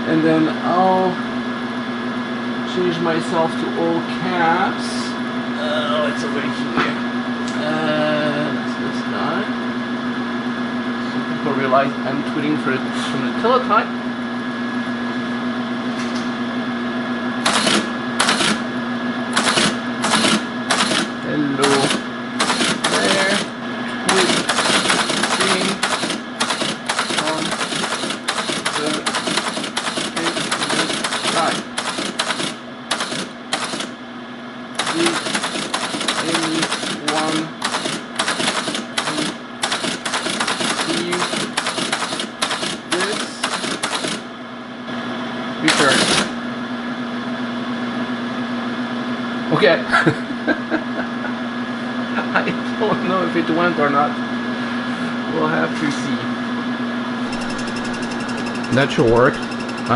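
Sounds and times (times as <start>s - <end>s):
teletype printing bursts: 17.4s - 18.6s, 19.3s - 34.0s, 34.8s - 44.3s, 45.7s - 46.4s, 57.3s - 59.9s
teletype motor humming: 17.4s - 34.0s, 34.7s - 44.4s, 45.6s - 46.4s, 57.2s - 59.9s.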